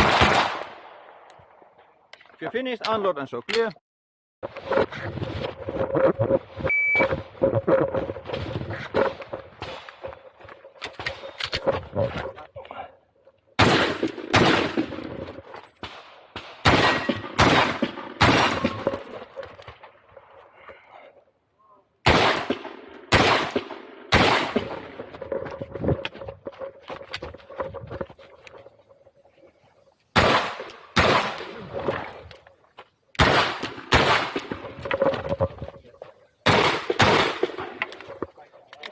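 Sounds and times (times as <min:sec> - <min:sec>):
pistol firing rapid shots: 0:00.0 - 0:00.9, 0:13.6 - 0:15.0, 0:16.3 - 0:18.8, 0:22.1 - 0:24.9, 0:30.2 - 0:31.6, 0:33.2 - 0:34.6, 0:36.4 - 0:37.8.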